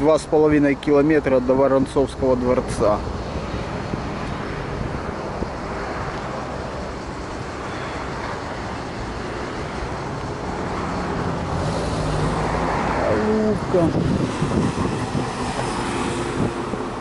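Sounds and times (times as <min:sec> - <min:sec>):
tyre and road noise: 0:00.0 - 0:17.0
wind rushing over microphone: 0:01.4 - 0:17.0.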